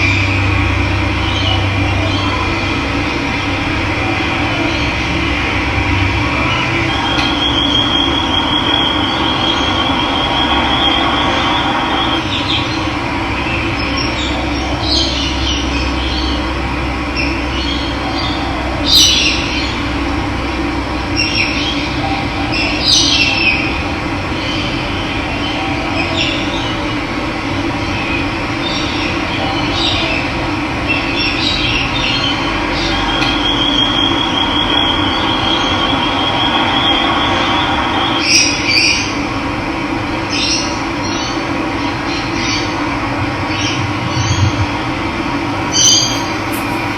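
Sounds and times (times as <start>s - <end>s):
birds chirping: 45.6s - 46.9s.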